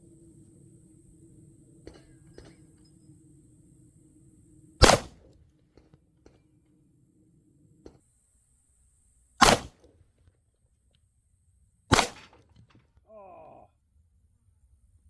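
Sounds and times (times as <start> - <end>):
revolver shots: 4.8 - 5.3, 9.4 - 9.8, 11.9 - 12.5.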